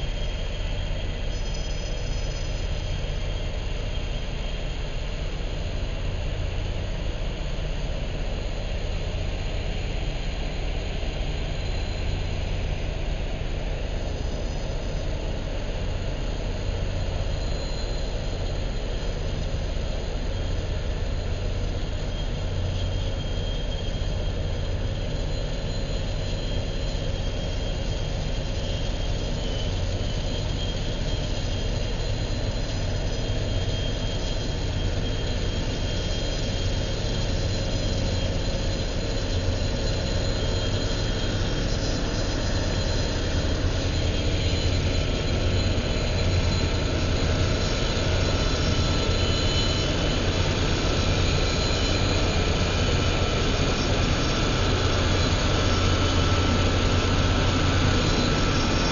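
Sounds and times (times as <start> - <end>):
heavy train engine drone: 0.0 - 58.9.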